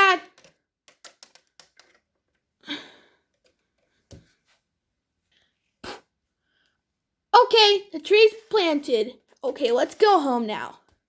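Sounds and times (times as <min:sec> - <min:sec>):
plastic bricks clicking: 0:00.2 - 0:02.4.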